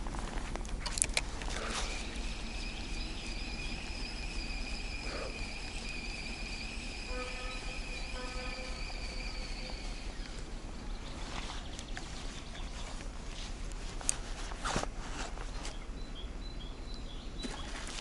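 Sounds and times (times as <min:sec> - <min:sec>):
sharp clicks: 0:00.6 - 0:01.8
low buzzing tone: 0:01.2 - 0:11.2
insect trill: 0:01.5 - 0:10.6.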